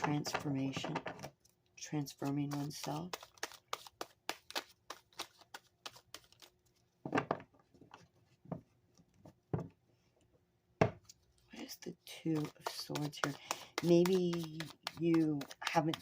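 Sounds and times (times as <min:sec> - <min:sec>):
cards clicking and snapping: 0:02.5 - 0:06.5, 0:12.4 - 0:16.0.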